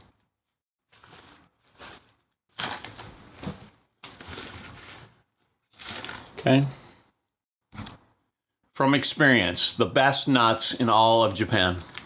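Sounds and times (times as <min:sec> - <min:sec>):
snack packet rustling: 0:00.9 - 0:06.5.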